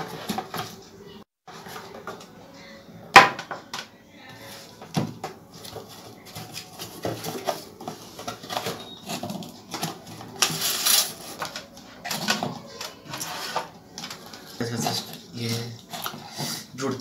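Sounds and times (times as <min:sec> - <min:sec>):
scratchy rustle: 0:05.5 - 0:12.3, 0:13.0 - 0:13.8.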